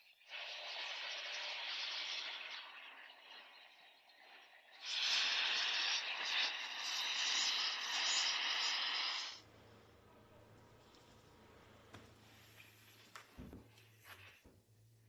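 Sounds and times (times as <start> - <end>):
loud hiss of spraying: 4.8 - 9.4.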